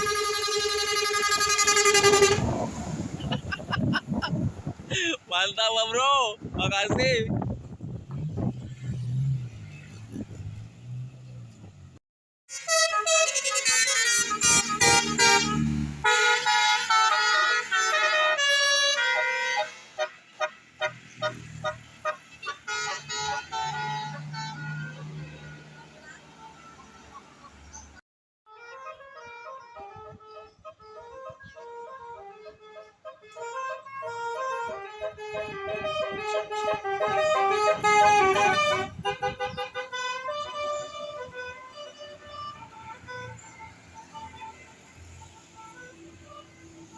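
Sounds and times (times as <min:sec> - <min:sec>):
musical air horn tune: 0:00.0 - 0:03.4, 0:12.5 - 0:19.9, 0:28.6 - 0:44.6
vehicle rumble: 0:00.0 - 0:05.8, 0:06.4 - 0:12.0, 0:34.1 - 0:46.9.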